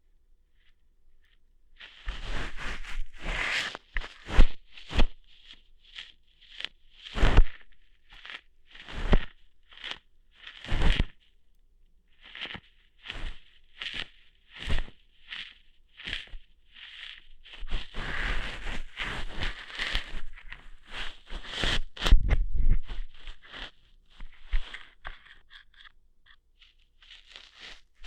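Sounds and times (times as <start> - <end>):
scratchy crackling: 1.8 - 11.2, 12.2 - 28.0
ear hair plucking snaps: 7.1 - 11.2, 17.0 - 28.0.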